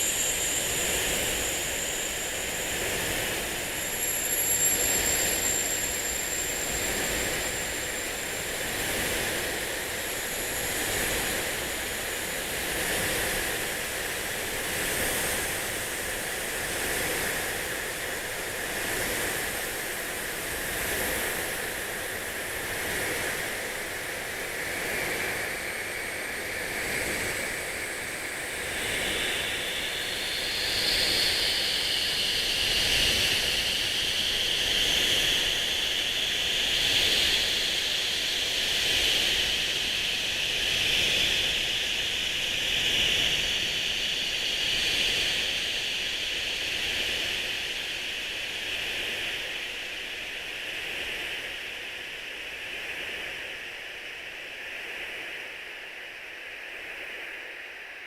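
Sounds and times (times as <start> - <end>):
faint high ringing tones: 0.0 - 8.5.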